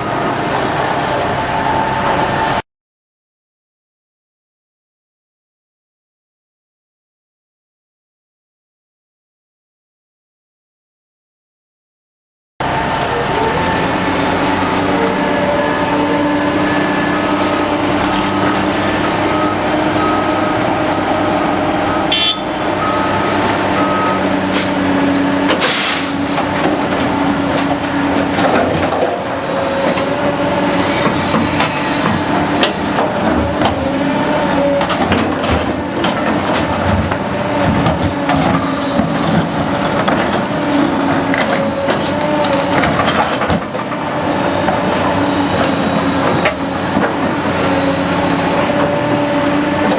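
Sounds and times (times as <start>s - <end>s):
heavy traffic engines: 0.0s - 2.6s, 12.6s - 49.9s.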